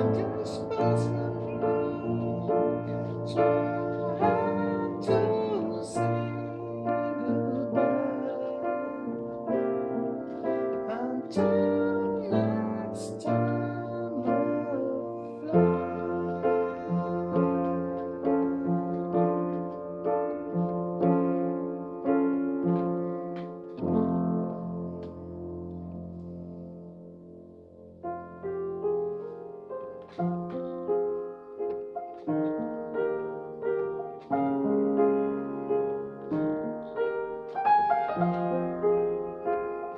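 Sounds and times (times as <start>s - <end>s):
keyboard piano chords: 0.0s - 39.9s.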